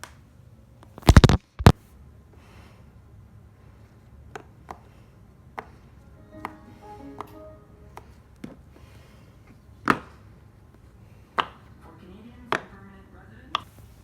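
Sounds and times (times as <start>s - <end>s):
fidget toy snapping and clicking: 1.0s - 1.7s.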